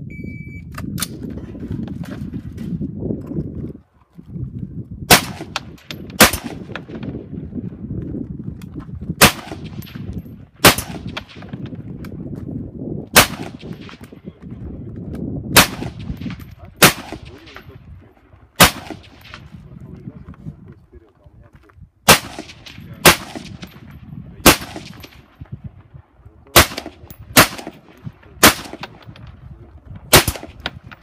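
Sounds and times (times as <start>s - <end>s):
rifle shots: 5.1s - 7.2s, 9.2s - 11.7s, 13.1s - 14.2s, 15.5s - 17.7s, 18.6s - 19.6s, 22.1s - 25.4s, 26.5s - 29.4s, 30.1s - 31.0s.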